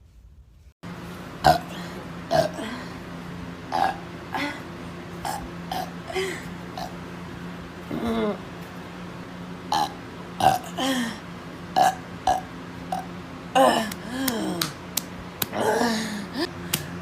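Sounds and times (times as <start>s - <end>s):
steady low hum: 0.0s - 17.0s
woman burping: 1.4s - 2.8s, 3.7s - 4.6s, 9.7s - 11.2s, 11.8s - 14.6s.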